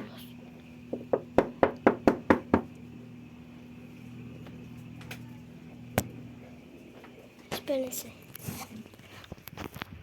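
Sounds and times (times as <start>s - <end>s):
low electrical hum: 0.0s - 10.0s
sharp knocks on hard surface: 0.9s - 2.7s.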